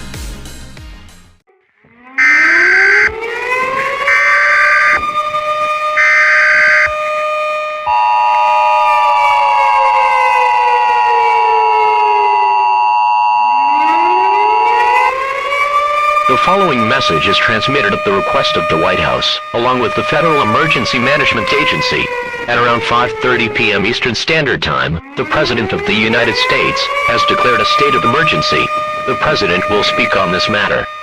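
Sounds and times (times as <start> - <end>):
civil defence siren winding: 1.7 - 24.1, 25.0 - 31.0
two-tone attention signal: 12.6 - 15.0.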